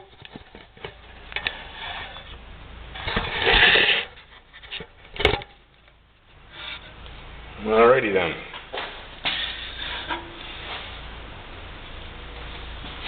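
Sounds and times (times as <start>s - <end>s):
harsh scraping: 0.0s - 5.5s, 6.4s - 7.0s, 9.2s - 11.1s.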